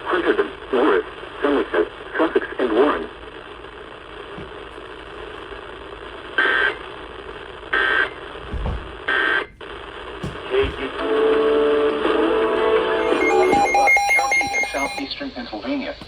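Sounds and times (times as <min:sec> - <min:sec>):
digital data bursts: 0:13.0 - 0:15.0
steady mid-pitched tones: 0:13.0 - 0:15.0.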